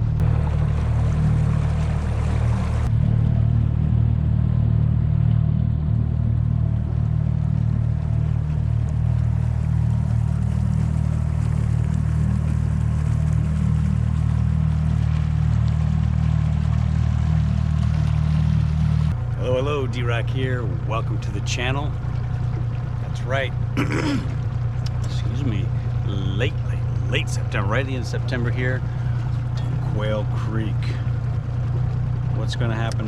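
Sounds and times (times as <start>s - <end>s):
boat motor humming: 0.0s - 33.0s.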